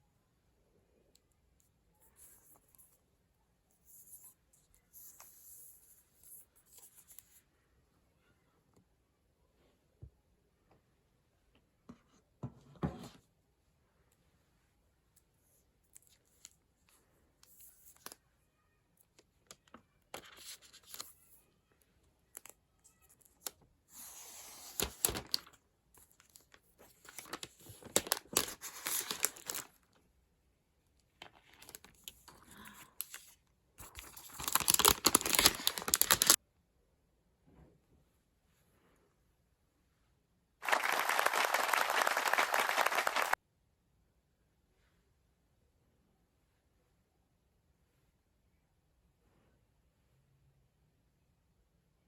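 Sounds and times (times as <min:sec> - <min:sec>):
packaging tearing and crinkling: 0:27.1 - 0:29.7, 0:33.9 - 0:36.4.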